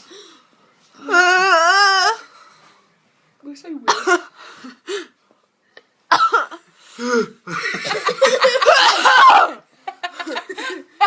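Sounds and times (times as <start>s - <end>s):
people laughing: 7.5s - 11.0s.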